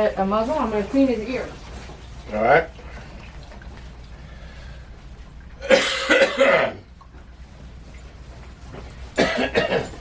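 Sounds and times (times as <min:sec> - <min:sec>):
person coughing: 0:05.6 - 0:06.8, 0:09.2 - 0:10.0.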